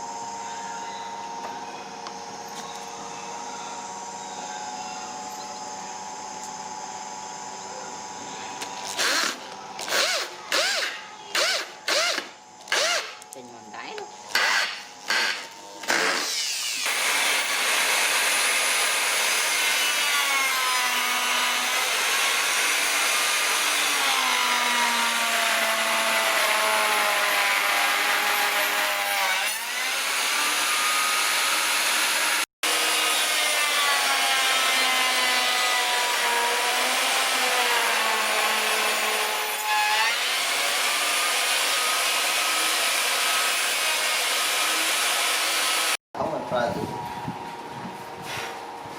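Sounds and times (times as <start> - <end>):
power tool cutting wood: 8.9 - 13.2, 14.3 - 46.0.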